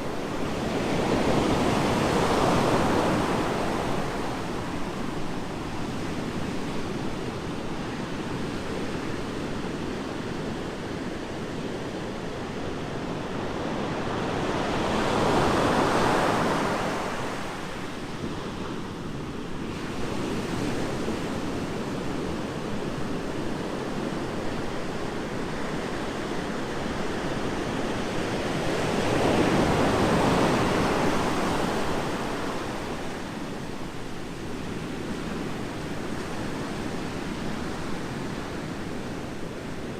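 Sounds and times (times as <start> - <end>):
ocean waves on beach: 0.0 - 39.9.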